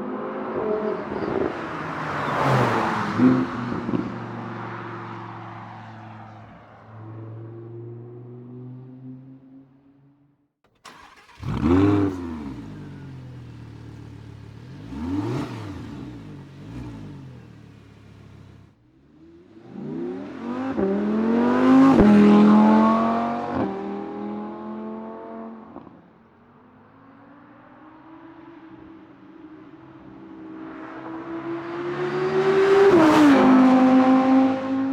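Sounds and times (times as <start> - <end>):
engine throttle blips: 10.7 - 18.7
sports car engine accelerating: 10.7 - 26.0, 30.9 - 34.9.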